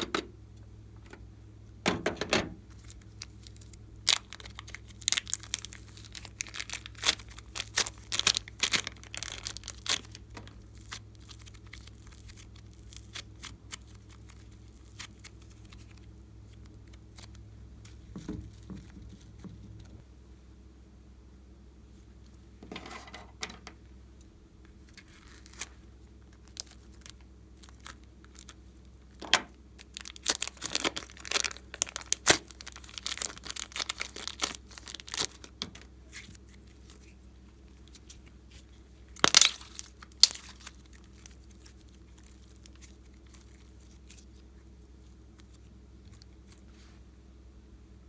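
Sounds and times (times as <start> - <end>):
slime crackling and popping: 2.8 - 17.4, 26.4 - 28.6, 29.8 - 37.1, 37.7 - 44.4.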